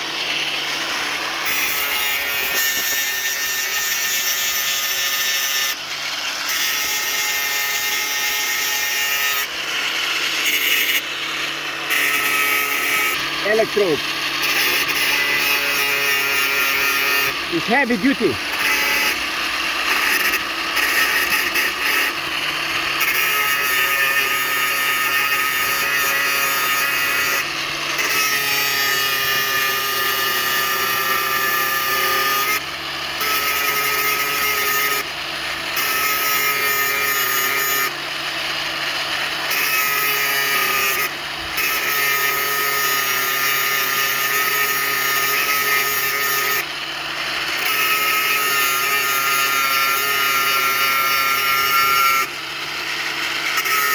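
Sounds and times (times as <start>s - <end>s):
welding arc crackling: 1.5s - 3.9s.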